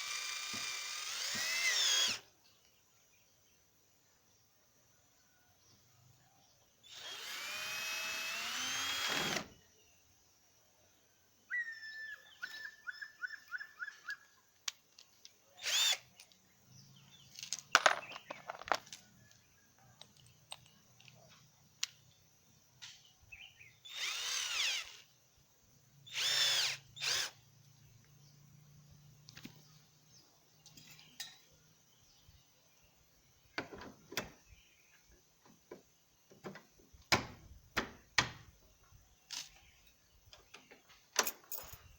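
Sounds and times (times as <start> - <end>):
power drill drilling wood: 0.0 - 2.2, 6.8 - 9.6, 15.6 - 16.1, 23.8 - 25.1, 26.1 - 27.4.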